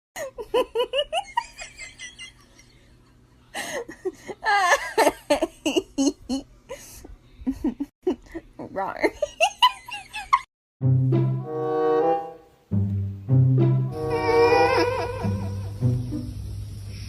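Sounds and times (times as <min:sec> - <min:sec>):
giggling laughter: 0:00.2 - 0:06.5, 0:09.1 - 0:10.5, 0:14.5 - 0:15.8.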